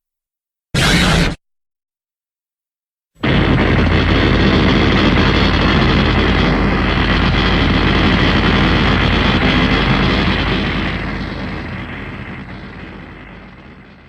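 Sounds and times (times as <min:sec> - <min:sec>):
heavy robot monster sound effect: 0:00.8 - 0:01.4.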